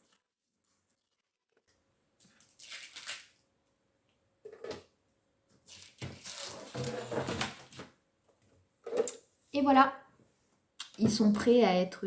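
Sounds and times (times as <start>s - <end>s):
objects clattering and rustling: 5.6s - 8.0s.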